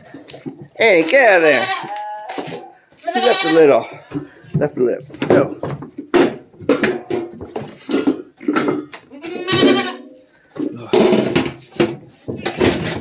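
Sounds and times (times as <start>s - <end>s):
goats bleating: 1.2s - 4.6s, 9.1s - 10.1s.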